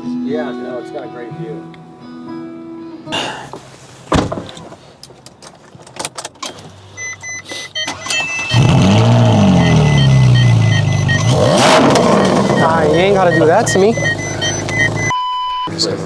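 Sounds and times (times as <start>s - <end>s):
car engine starting and idling: 5.6s - 15.1s
car warning chime beeping: 7.0s - 16.0s.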